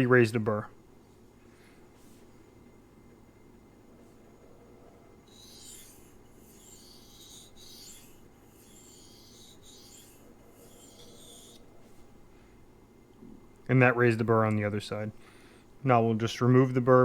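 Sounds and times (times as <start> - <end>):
knife rasping on whetstone: 5.0 - 12.0.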